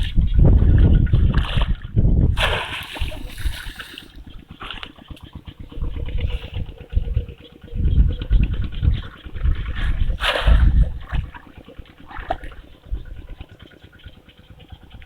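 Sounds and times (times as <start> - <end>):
heavy low thumps: 0.0 - 3.6
water splashing and sloshing: 0.0 - 15.0.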